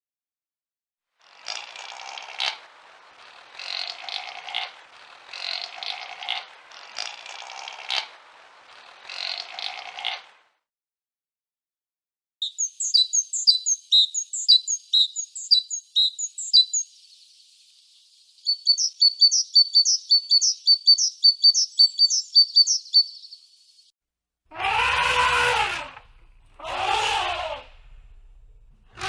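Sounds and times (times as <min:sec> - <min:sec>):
drawn-out animal call: 0:01.3 - 0:10.4, 0:24.5 - 0:29.0
songbird chirping rapidly: 0:12.4 - 0:23.9.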